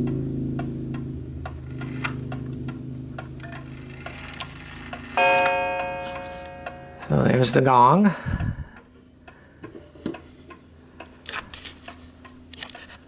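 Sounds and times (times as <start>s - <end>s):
wall clock ticking: 0.0s - 4.2s, 4.9s - 11.2s
clock gong striking: 5.2s - 7.9s
low ringing: 5.2s - 7.9s.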